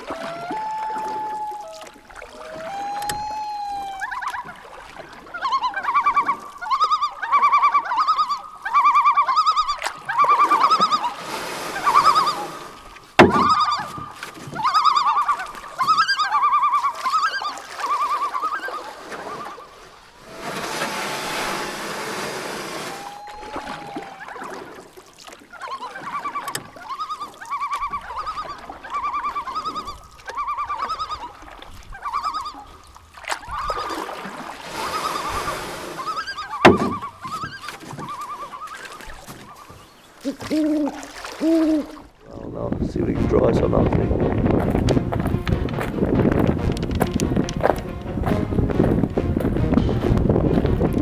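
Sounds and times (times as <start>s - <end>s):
bird calling: 0.0s - 24.8s, 25.5s - 42.1s
wind gusts: 30.6s - 38.1s, 40.9s - 51.0s.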